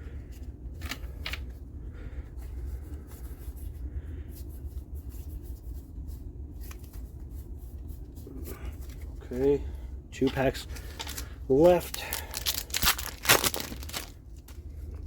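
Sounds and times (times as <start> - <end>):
low room hum: 0.0 - 15.0
paper cards rustling: 10.2 - 14.8.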